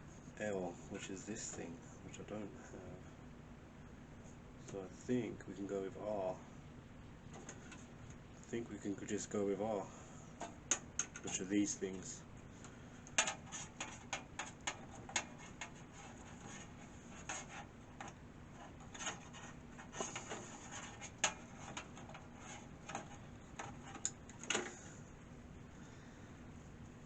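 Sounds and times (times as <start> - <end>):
cables clicking into connectors: 10.4 - 11.4, 12.6 - 15.8, 20.0 - 24.8.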